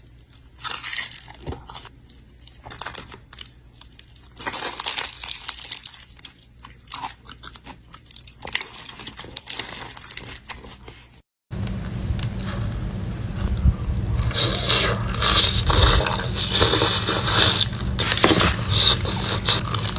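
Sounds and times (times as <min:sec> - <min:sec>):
crunchy biting and chewing: 0:00.0 - 0:11.2, 0:11.8 - 0:19.9
steady rough noise: 0:11.5 - 0:19.9.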